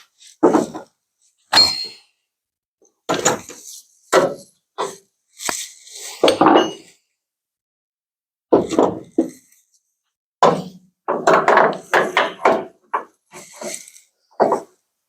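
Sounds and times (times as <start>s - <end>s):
metal tools clanking: 1.5s - 2.0s.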